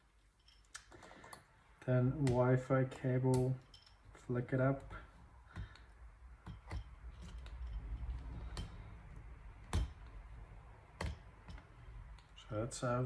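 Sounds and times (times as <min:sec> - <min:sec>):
tools clicking on laptop internals: 0:05.4 - 0:12.4.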